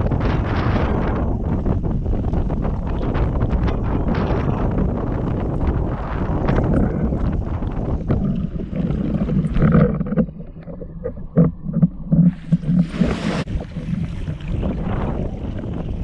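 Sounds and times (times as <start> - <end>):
wind buffeting microphone: 0.0 - 16.0
water moving around board: 5.2 - 16.0.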